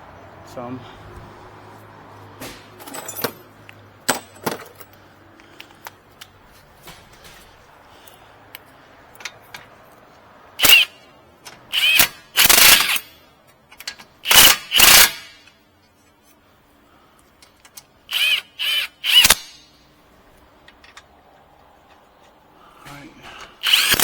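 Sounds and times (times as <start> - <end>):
impact wrench bursts: 10.6 - 11.0, 11.6 - 13.2, 14.2 - 15.5, 18.1 - 19.8, 23.5 - 24.0.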